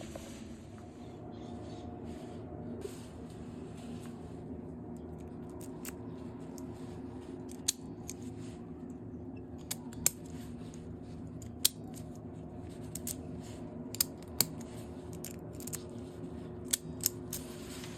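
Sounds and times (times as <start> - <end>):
steady low hum: 0.0 - 17.9.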